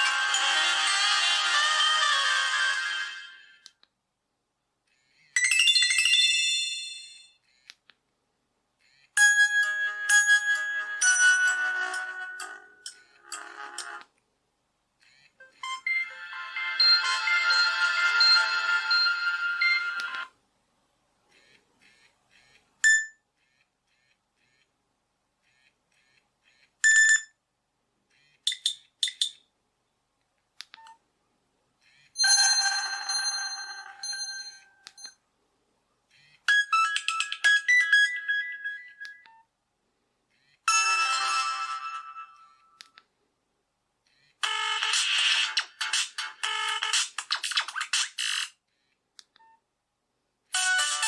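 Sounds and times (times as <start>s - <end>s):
melodic ringtones: 0.0s - 3.5s, 9.2s - 14.0s, 15.4s - 20.3s, 50.6s - 51.0s
phone ringtones: 15.4s - 20.3s, 32.2s - 35.2s, 40.7s - 42.8s, 50.6s - 51.0s.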